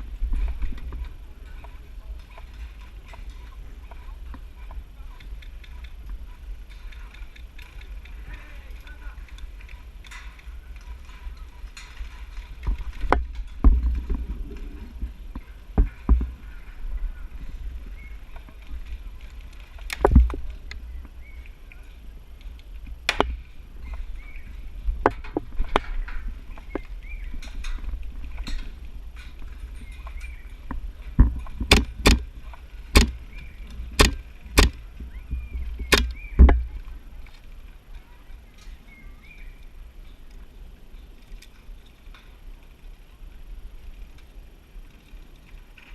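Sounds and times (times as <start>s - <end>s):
low rumble of movement: 0.0s - 45.9s
wind against camera: 0.0s - 45.9s
sharp knocks: 31.2s - 32.3s, 33.0s - 33.2s, 34.0s - 34.8s
airsoft gun shots: 31.7s - 32.2s, 33.0s - 33.2s, 34.0s - 34.8s.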